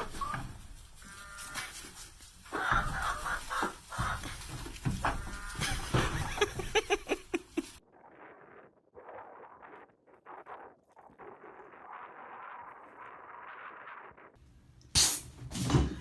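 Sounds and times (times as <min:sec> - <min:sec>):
chickens clucking: 0:00.0 - 0:07.8.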